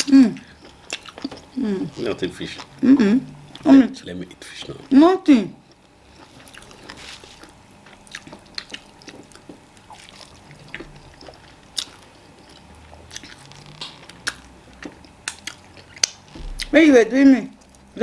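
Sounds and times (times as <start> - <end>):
close chewing and mouth sounds: 0.0 - 16.8
lip smacks: 11.8 - 16.8.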